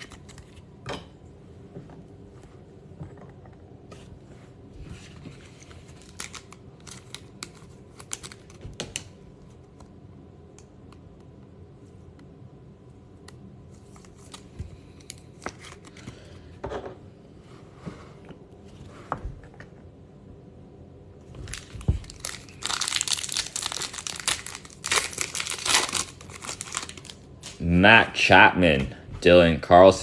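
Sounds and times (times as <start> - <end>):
card pack wrapper crinkling: 5.4 - 9.2, 13.8 - 16.0, 21.4 - 27.6.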